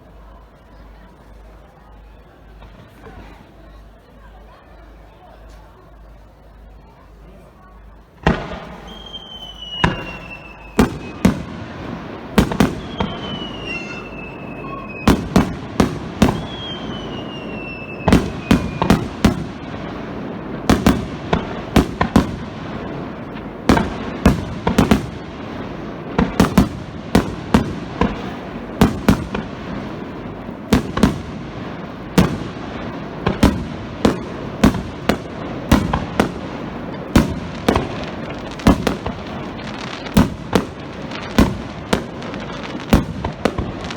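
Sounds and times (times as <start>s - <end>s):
fireworks bursts: 0.0s - 43.9s
whistling fireworks shells: 8.6s - 11.5s, 12.4s - 19.7s.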